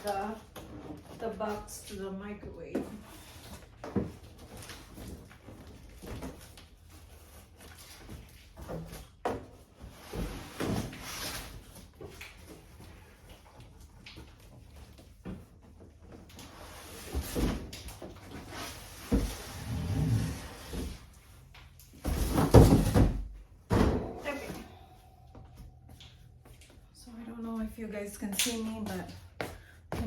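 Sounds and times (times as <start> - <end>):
cardboard boxes thumping and scraping: 22.0 - 24.5.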